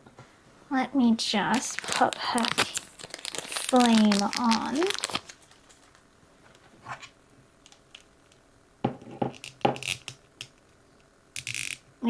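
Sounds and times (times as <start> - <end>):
plastic parts rustling: 1.4 - 8.4.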